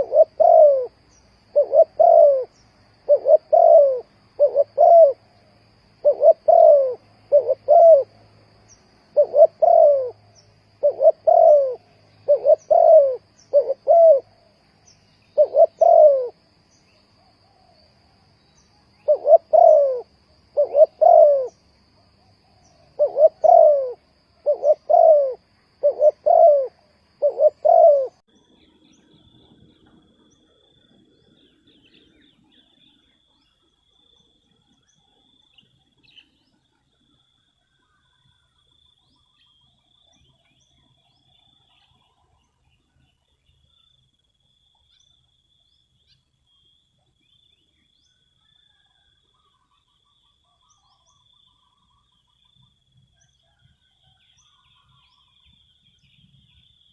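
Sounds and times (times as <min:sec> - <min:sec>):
dove cooing: 0:00.0 - 0:08.4, 0:09.0 - 0:14.6, 0:15.2 - 0:16.5, 0:19.0 - 0:28.2
faint steady high tone: 0:00.0 - 0:56.9.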